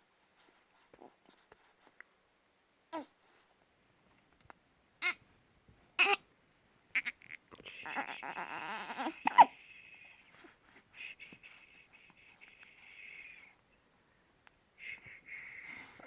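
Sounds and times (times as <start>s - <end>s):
dog whining: 7.8s - 9.5s.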